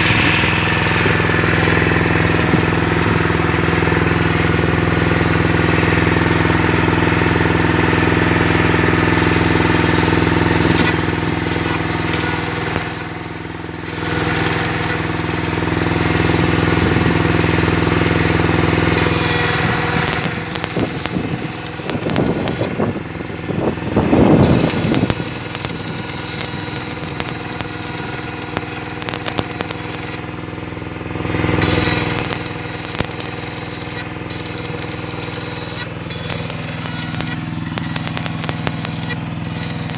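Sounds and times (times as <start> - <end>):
machine humming and hissing: 0.0 - 39.9.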